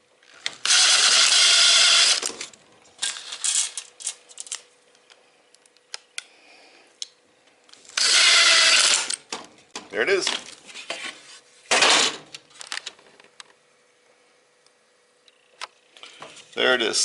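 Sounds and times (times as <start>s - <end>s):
drill driving a screw: 0.5s - 2.4s, 8.0s - 9.2s.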